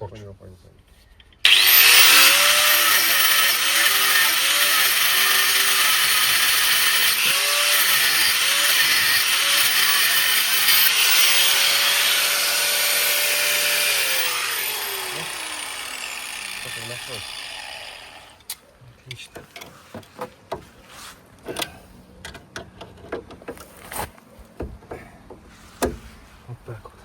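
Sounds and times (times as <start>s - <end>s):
power tool grinding metal: 1.4s - 18.4s.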